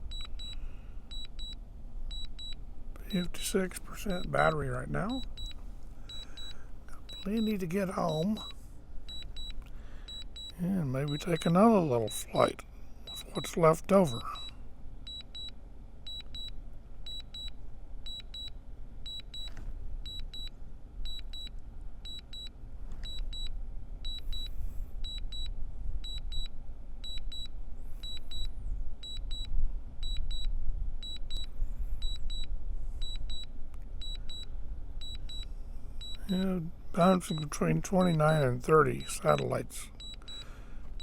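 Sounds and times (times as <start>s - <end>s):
remote controller double beeps: 0.0s - 3.3s, 3.9s - 12.5s, 13.1s - 14.5s, 27.1s - 28.5s, 29.1s - 40.5s
wind rumble on microphone: 23.6s - 33.8s.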